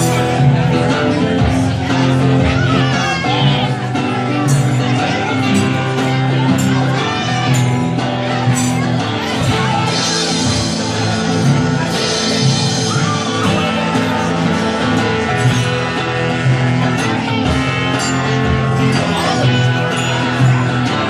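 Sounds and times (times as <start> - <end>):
electric guitar: 0.0 - 21.0
rock band playing live: 0.0 - 21.0.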